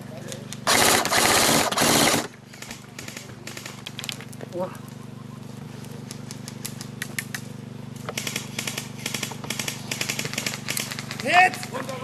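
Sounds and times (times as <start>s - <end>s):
steady low hum: 0.0s - 12.0s
airsoft guns firing bursts: 0.6s - 3.9s, 8.1s - 12.0s.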